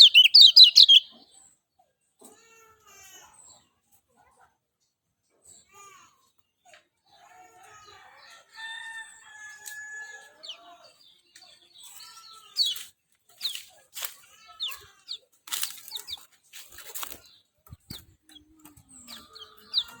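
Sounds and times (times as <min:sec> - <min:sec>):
bird chirps and whistles: 0:00.0 - 0:01.1
low clucking bird call: 0:00.0 - 0:01.3
rustling noise: 0:15.5 - 0:18.2.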